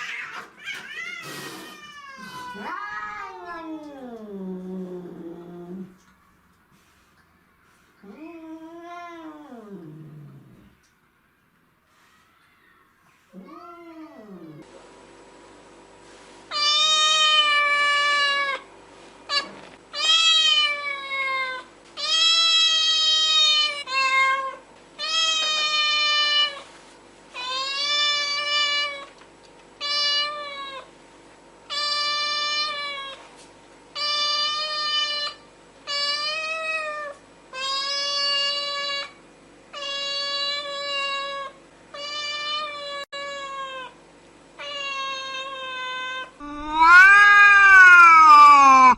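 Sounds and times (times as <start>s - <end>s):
faint steady hum: 0.0s - 48.9s
cat meowing: 44.6s - 48.9s.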